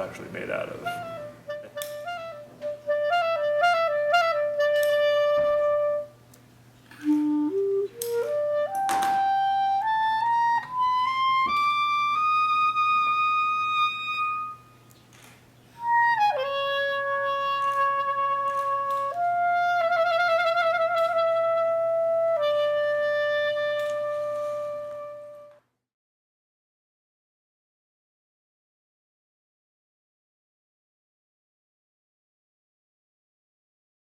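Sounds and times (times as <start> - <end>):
solo wind instrument melody: 0.8 - 6.2, 6.9 - 14.8, 15.8 - 25.6.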